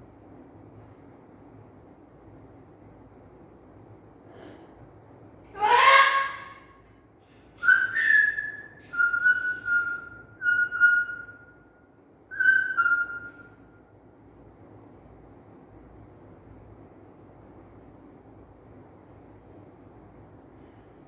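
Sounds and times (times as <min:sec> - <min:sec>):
parrot squawking: 0:07.6 - 0:11.4, 0:12.3 - 0:13.5
parrot whistling: 0:07.6 - 0:11.6, 0:12.3 - 0:13.6.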